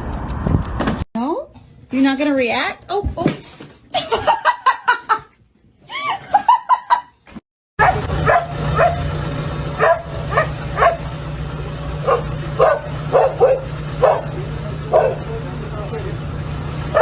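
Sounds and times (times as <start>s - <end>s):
dog barking in high yaps: 7.8s - 9.1s, 9.8s - 11.1s, 12.0s - 14.3s.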